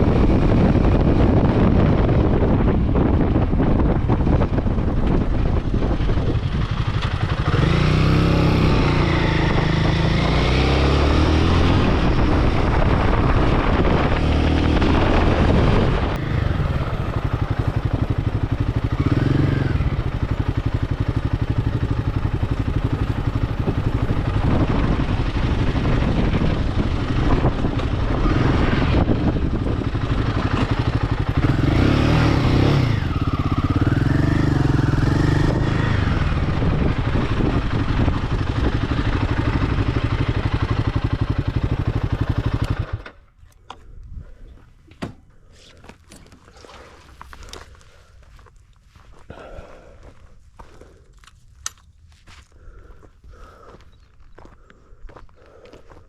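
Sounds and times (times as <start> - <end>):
wind noise on microphone: 0.0 - 43.0, 43.8 - 48.4
motorcycle engine revving: 0.0 - 43.8.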